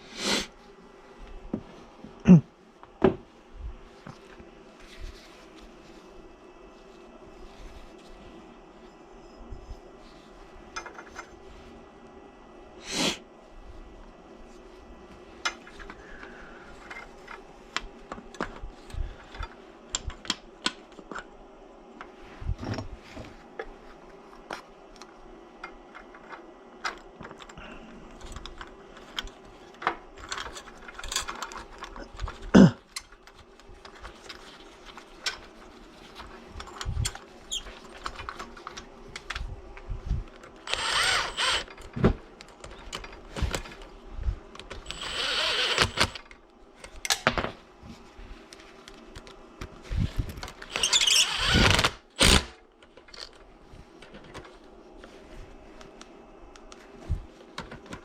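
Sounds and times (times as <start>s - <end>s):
steady low hum: 0.0s - 58.0s
small parts and tools clicking: 24.5s - 39.5s, 40.3s - 43.9s, 44.6s - 47.3s, 50.2s - 54.5s.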